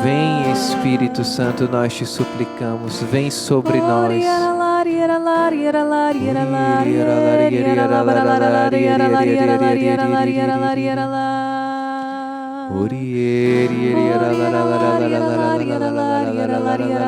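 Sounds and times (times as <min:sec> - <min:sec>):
held worship music chords: 0:00.0 - 0:04.6, 0:12.5 - 0:17.0
wordless singing: 0:00.0 - 0:17.0.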